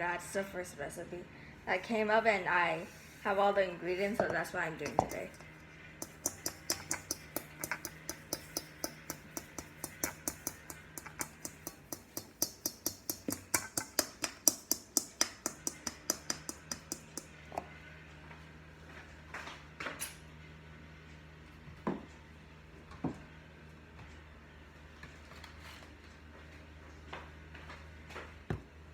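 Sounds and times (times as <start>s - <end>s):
baking utensil clicking: 4.8s - 17.3s.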